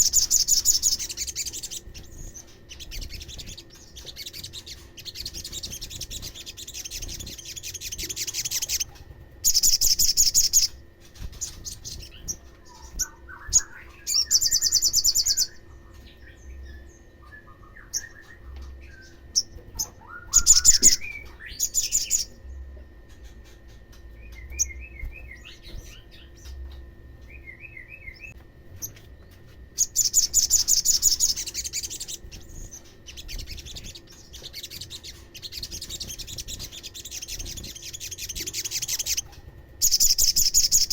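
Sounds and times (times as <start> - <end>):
bird trilling fast and high: 0.0 - 15.6, 19.3 - 22.4, 29.8 - 40.9
bird chirps and twittering: 0.0 - 40.9.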